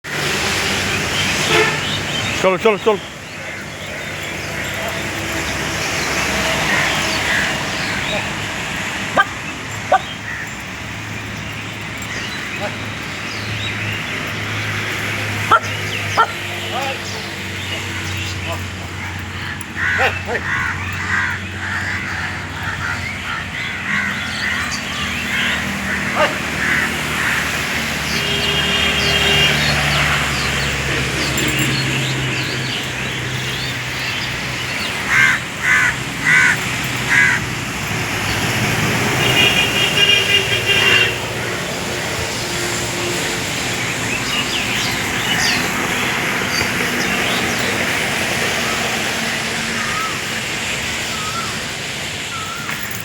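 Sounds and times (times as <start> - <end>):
small birds chirping: 0.7 - 53.0
crows cawing: 6.4 - 8.4, 9.9 - 10.6, 15.5 - 27.9, 34.1 - 37.7, 48.3 - 50.4.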